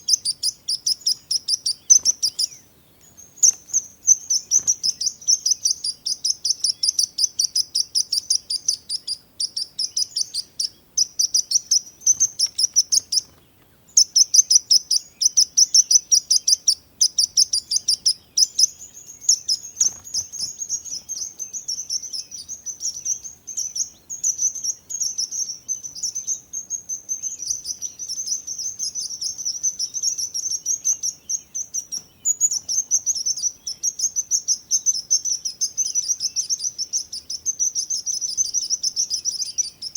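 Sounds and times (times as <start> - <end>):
sparrows chirping: 0.0 - 39.9.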